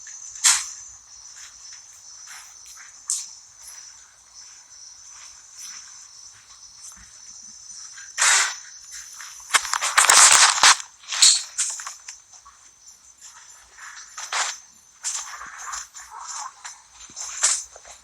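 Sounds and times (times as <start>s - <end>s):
high insect chirring: 0.0s - 18.0s
rustling and scuffing: 8.0s - 18.0s.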